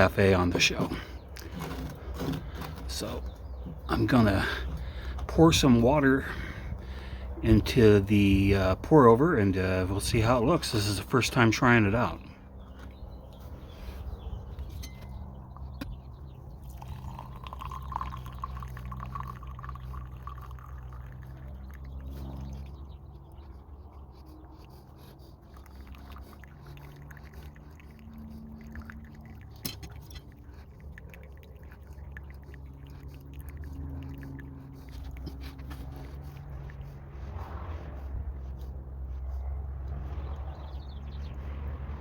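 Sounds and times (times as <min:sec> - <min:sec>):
steady low hum: 0:00.0 - 0:41.0
water pouring into coffee dripper: 0:16.6 - 0:21.8.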